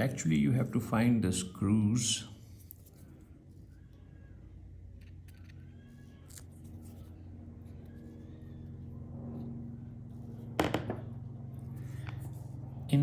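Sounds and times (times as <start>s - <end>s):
low hum: 2.3s - 13.0s.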